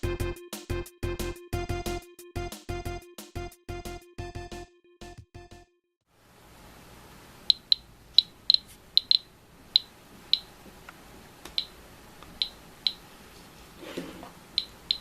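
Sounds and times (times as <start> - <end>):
geiger counter clicking: 7.5 - 10.5, 11.5 - 13.0, 14.6 - 15.0.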